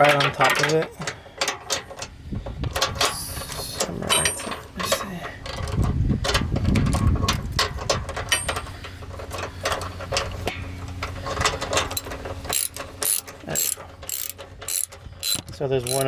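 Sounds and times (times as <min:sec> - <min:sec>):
ratchet wrench clicking: 0:12.0 - 0:16.0.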